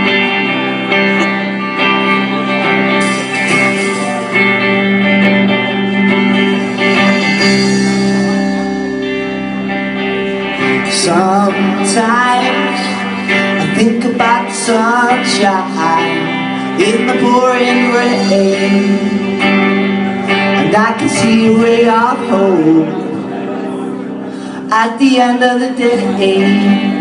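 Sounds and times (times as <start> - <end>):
bass guitar: 0.0 - 27.0
electric guitar chords: 0.0 - 27.0
wavering melodic line: 2.1 - 12.1.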